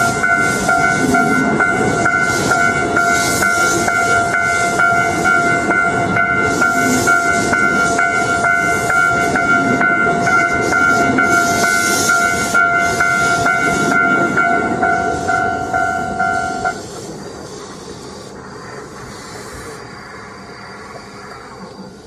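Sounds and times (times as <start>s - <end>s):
level crossing warning bell: 0.0s - 16.8s
train running past: 0.0s - 22.0s.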